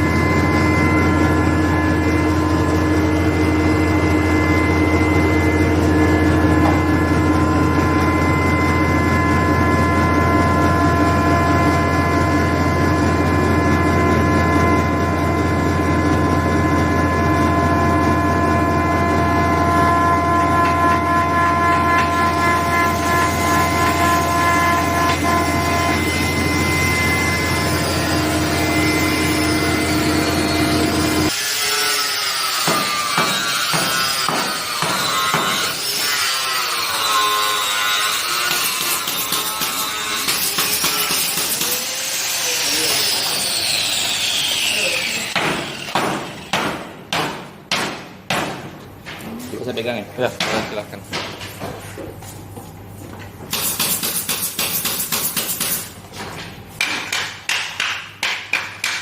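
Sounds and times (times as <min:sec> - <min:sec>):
wavering high whine: 0:00.0 - 0:31.3, 0:39.0 - 0:46.5
pulverizer machine humming: 0:00.0 - 0:31.4.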